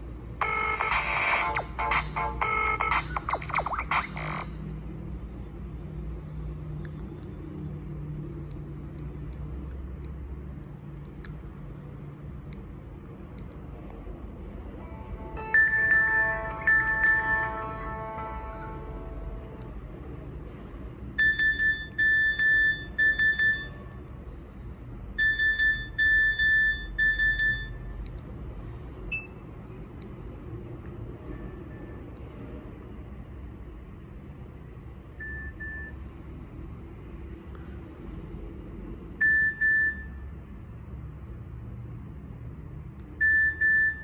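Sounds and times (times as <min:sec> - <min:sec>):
phone ringtone beeping: 0:00.4 - 0:04.5, 0:14.8 - 0:19.6, 0:21.2 - 0:24.0, 0:25.2 - 0:27.9, 0:39.2 - 0:40.2, 0:43.2 - 0:44.0.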